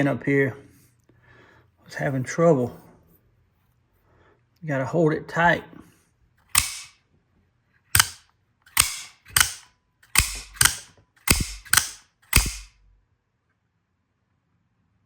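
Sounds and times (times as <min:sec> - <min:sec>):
knife blade snapping: 0:06.6 - 0:06.9, 0:08.0 - 0:12.9.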